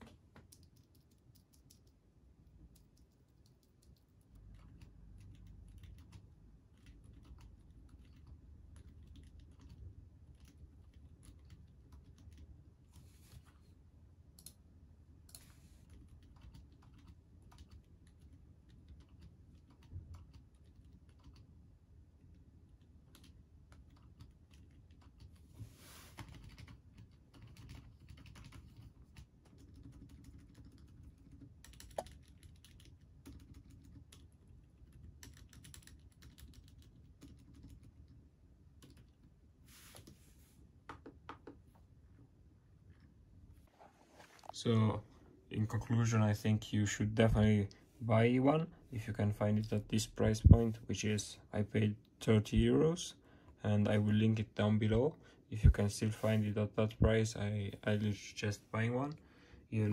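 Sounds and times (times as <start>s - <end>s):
muted keyboard typing: 0.0s - 12.6s, 15.2s - 21.6s, 22.2s - 25.5s, 26.1s - 39.3s.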